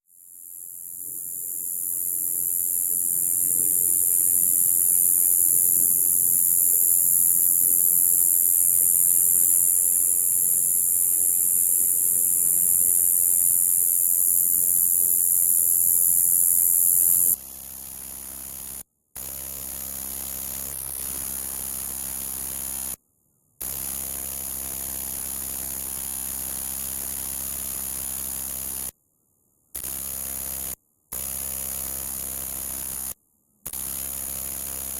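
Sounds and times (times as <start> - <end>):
katydid high-pitched buzz: 0.3 - 17.4.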